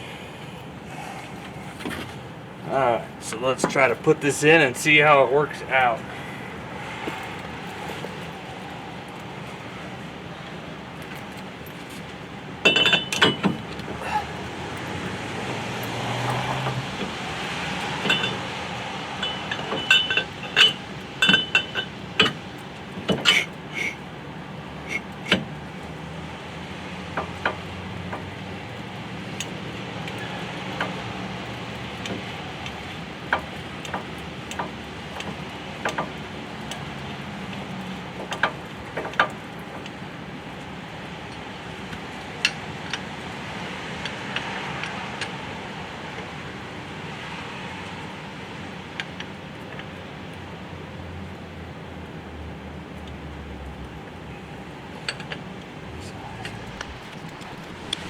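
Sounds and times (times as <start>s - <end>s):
metal clinks and knocks: 11.0s - 15.0s, 15.7s - 23.6s, 54.9s - 58.0s.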